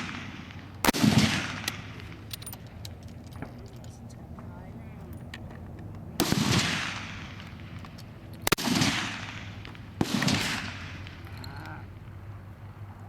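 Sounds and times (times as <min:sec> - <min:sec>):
rifle shots with echo: 0:00.0 - 0:02.7, 0:06.2 - 0:12.1.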